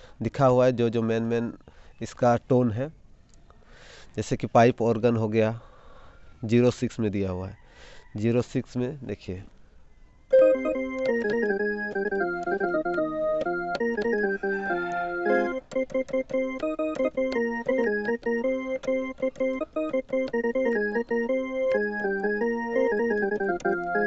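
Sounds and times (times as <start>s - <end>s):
organ chords on keyboard: 10.3s - 24.0s.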